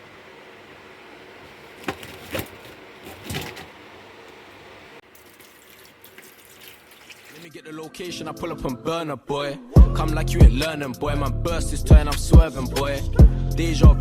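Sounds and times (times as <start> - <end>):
tap water running into container: 5.0 - 7.5.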